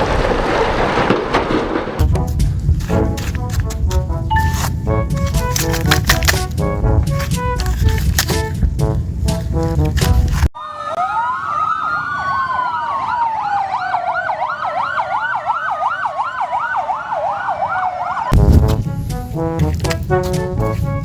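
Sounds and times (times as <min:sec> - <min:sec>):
music with brass: 0:02.1 - 0:10.5, 0:18.4 - 0:21.0
siren wail: 0:10.6 - 0:18.4
siren yelp: 0:10.6 - 0:18.4.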